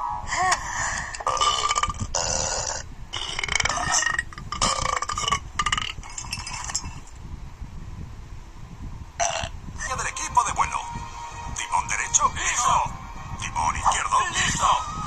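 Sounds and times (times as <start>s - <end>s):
person burping: 1.2s - 6.0s, 9.2s - 9.6s.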